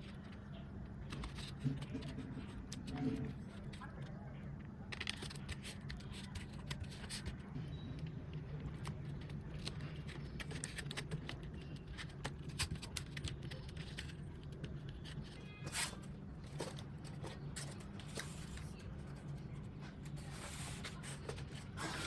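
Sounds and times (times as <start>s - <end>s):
hands clicking and scraping materials: 0.0s - 22.0s.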